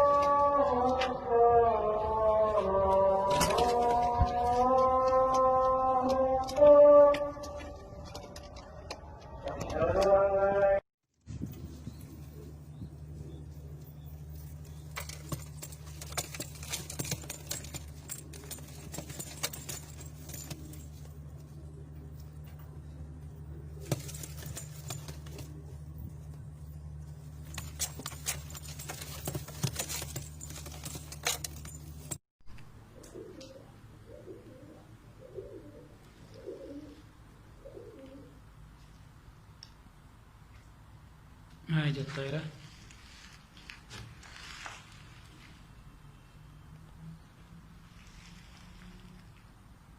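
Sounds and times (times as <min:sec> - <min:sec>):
steady low hum: 0:11.2 - 0:36.4
light metallic rattling: 0:14.2 - 0:22.6, 0:23.8 - 0:32.2
pigeon cooing: 0:32.9 - 0:38.5.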